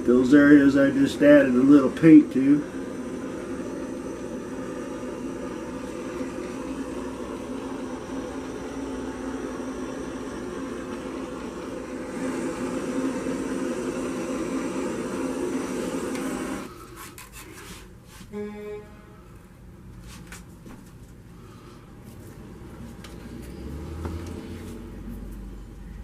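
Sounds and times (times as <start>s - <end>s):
torch flame roaring: 0.0s - 16.7s.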